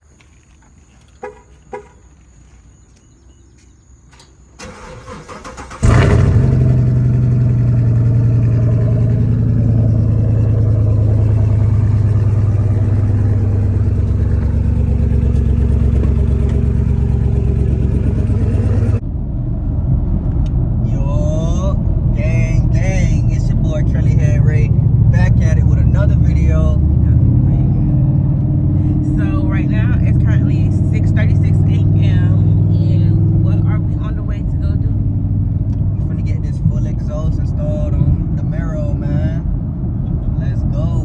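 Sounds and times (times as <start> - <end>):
starter motor cranking: 4.6 - 8.3
car engine idling loudly: 5.5 - 19.0, 22.1 - 39.2.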